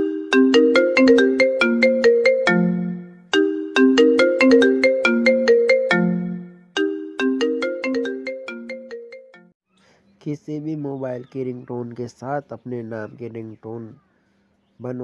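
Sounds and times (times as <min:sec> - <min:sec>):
mobile phone ringtone melody: 0:00.0 - 0:09.6.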